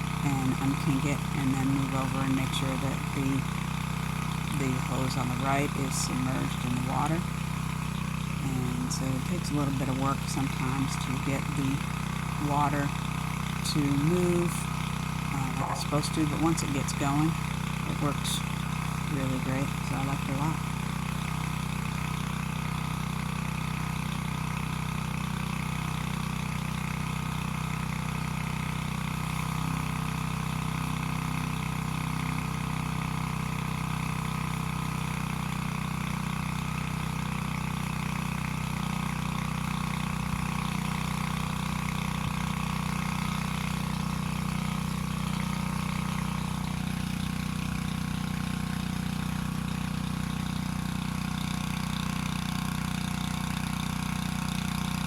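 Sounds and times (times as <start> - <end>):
water pump engine running: 0.0 - 55.0.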